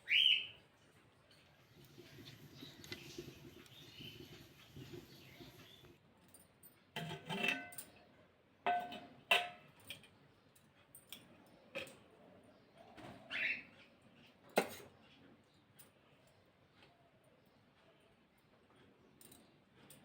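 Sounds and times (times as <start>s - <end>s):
household objects knocking and clinking: 8.7s - 10.1s.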